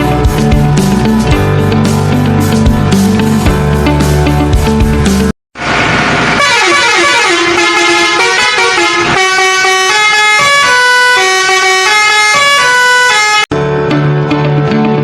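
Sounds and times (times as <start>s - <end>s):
musical vehicle horn tune: 6.4s - 13.5s.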